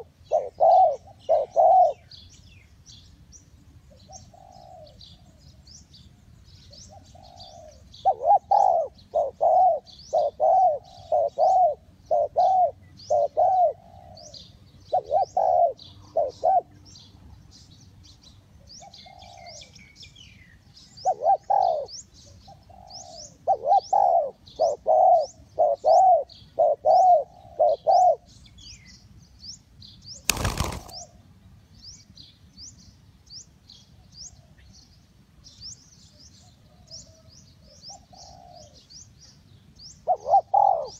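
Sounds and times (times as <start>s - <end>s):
dove cooing: 0.0s - 2.1s, 3.9s - 5.4s, 6.9s - 16.8s, 18.8s - 19.7s, 21.0s - 28.3s, 37.9s - 38.8s, 40.0s - 40.9s
small birds chirping: 0.0s - 40.9s.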